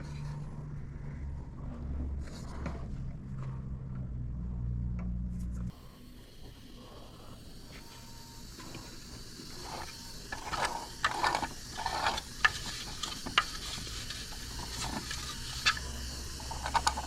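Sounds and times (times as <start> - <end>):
faint low hum: 0.0 - 17.0
short scrapes of parts fitting: 9.5 - 17.0.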